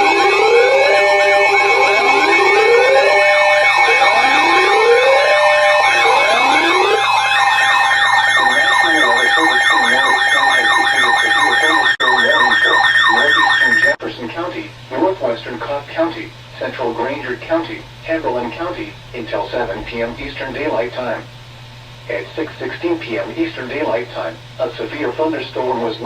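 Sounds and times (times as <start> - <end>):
sirens wailing and yelping: 0.0 - 14.0
steady alarm tones: 0.0 - 14.0.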